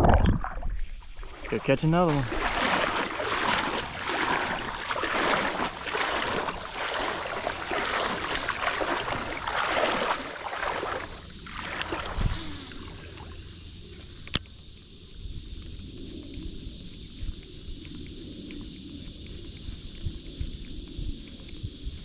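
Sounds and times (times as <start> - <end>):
water splashing and rushing: 1.1 - 14.4.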